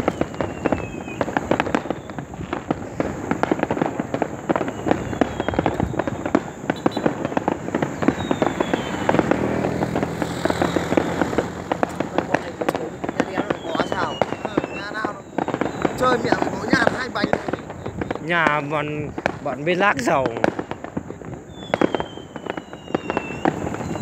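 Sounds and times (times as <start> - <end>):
faint falling whistles: 0.0 - 2.5, 4.5 - 9.6, 10.2 - 11.3, 13.1 - 18.5, 21.4 - 24.0
fireworks bangs and pops: 0.0 - 24.0.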